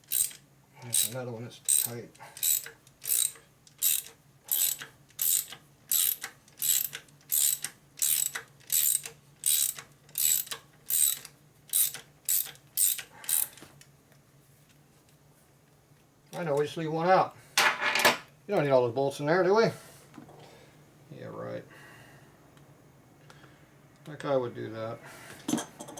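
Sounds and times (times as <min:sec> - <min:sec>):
ratchet wrench ratcheting: 0:00.0 - 0:13.6.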